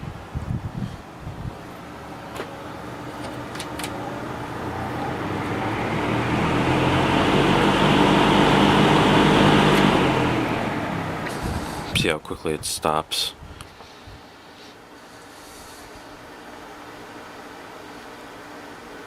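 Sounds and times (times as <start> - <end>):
rush of air from fan blades: 0.0 - 12.1, 13.3 - 19.0
box fan motor hum: 0.0 - 12.2.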